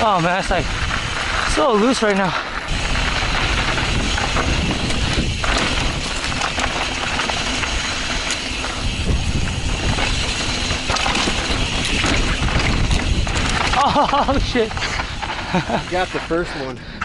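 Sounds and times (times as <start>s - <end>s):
bike rattling: 0.0s - 17.0s
tyres crunching on loose dirt: 0.0s - 17.0s
wind on microphone: 2.7s - 15.5s.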